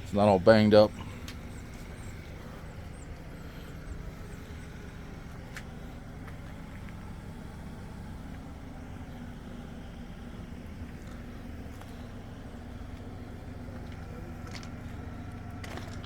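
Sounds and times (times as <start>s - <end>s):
vehicle engine idling hum: 0.0s - 16.0s.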